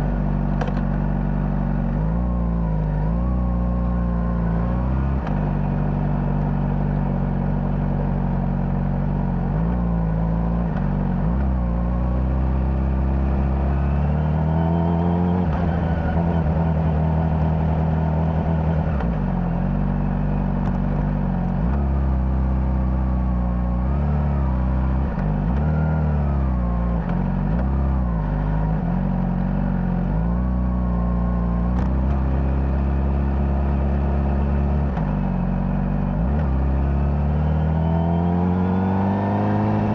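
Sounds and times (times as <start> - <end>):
motorcycle engine revving: 9.0 - 39.9.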